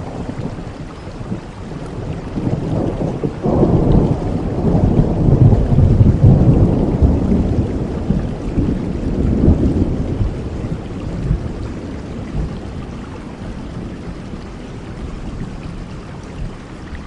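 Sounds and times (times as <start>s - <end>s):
thunder rolling: 0.0s - 14.0s
steady rain: 0.0s - 17.0s.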